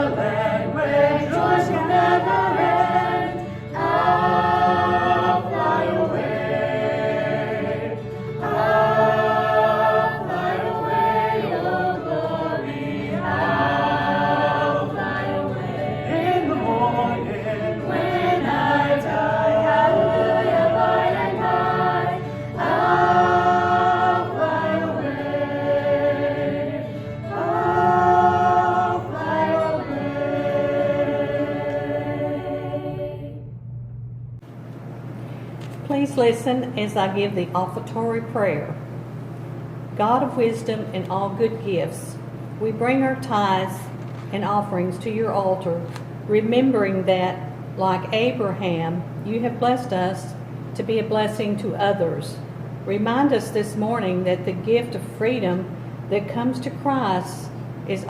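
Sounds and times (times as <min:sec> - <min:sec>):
choir singing in harmony: 0:00.0 - 0:33.6.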